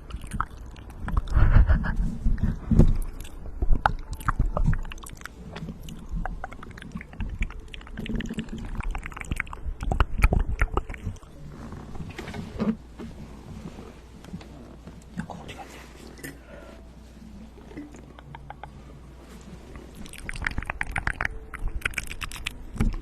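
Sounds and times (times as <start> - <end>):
wet lip and tongue clicks: 3.0 - 11.3, 17.8 - 18.8, 20.0 - 23.0.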